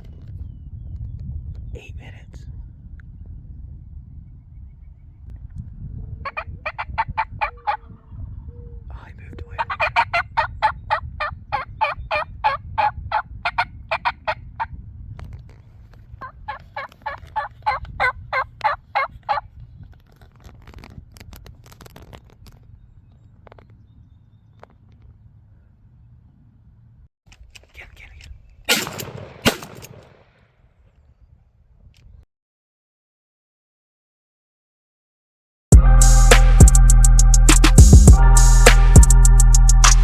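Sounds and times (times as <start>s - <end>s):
turkey yelping: 6.2s - 8.0s, 9.6s - 14.5s, 16.2s - 19.5s.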